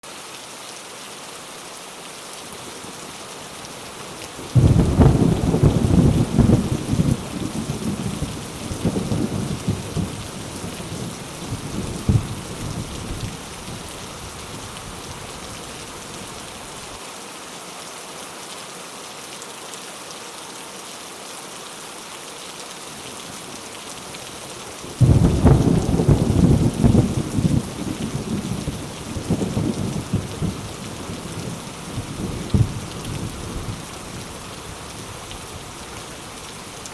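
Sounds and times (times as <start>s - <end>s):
steady rain falling: 0.0s - 36.9s
thunderclap rumbling: 4.5s - 15.4s, 25.0s - 34.2s.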